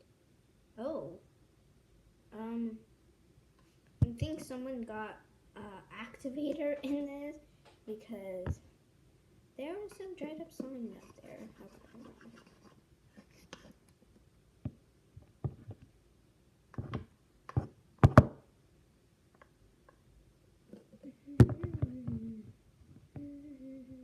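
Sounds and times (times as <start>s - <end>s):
person humming: 20.7s - 24.0s.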